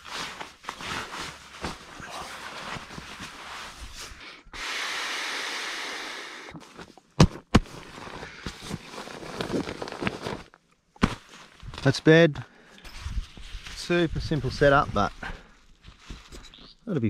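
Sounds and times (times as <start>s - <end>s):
steady hiss: 4.6s - 6.5s.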